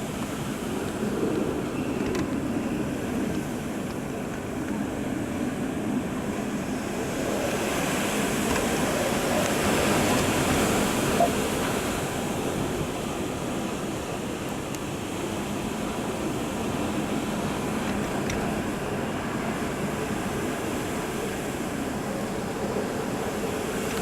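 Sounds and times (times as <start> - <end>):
storm wind blowing hard: 0.0 - 24.0.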